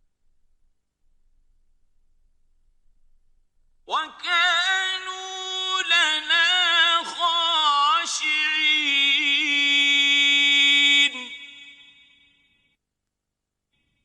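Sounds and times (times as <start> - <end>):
man chanting melodically: 3.9 - 12.0.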